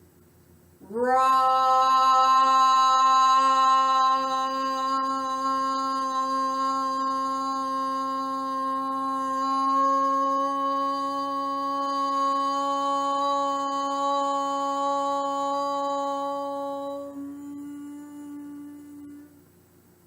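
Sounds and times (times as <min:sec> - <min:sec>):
woman chanting a held note: 0:00.8 - 0:19.4.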